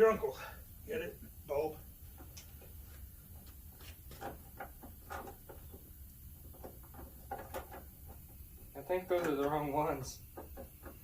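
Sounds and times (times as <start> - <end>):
low steady hum: 0.0 - 11.0
plastic parts clicking and knocking: 6.5 - 8.3.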